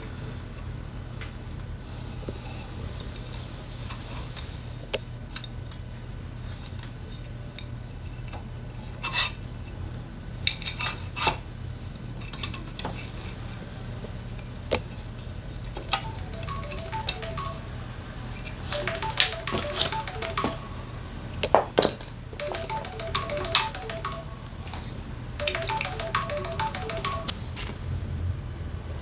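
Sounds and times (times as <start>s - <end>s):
light melody of short notes: 15.9s - 17.8s, 18.8s - 21.1s, 22.4s - 27.4s.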